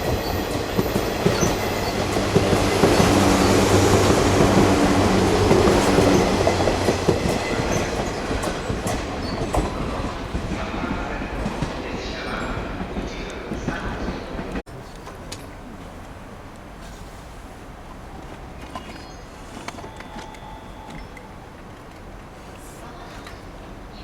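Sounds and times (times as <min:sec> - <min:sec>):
wheels clattering over rail joints: 0:00.0 - 0:16.1
electric train passing: 0:00.0 - 0:16.8, 0:19.2 - 0:22.6.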